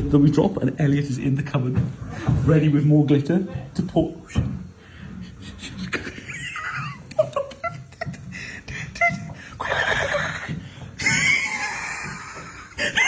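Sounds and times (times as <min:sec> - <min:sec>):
muffled laughter and snickering: 0:05.2 - 0:13.0.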